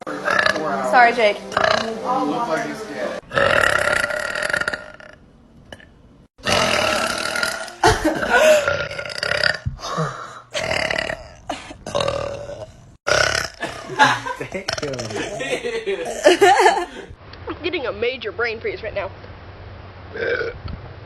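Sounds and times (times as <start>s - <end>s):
woman burping: 3.3s - 16.8s.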